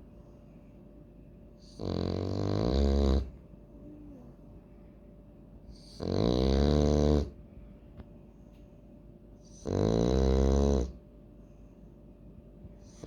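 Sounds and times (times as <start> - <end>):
dog snoring: 1.6 - 3.4, 5.7 - 7.4, 9.4 - 11.0, 12.8 - 13.0.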